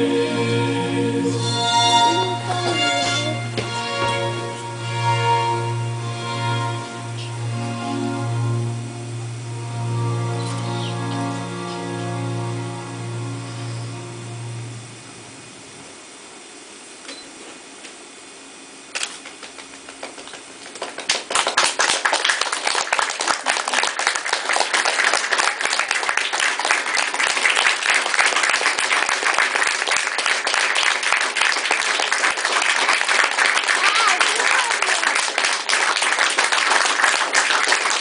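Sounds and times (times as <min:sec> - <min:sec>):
audience applause: 0:02.1 - 0:04.7, 0:19.2 - 0:38.0.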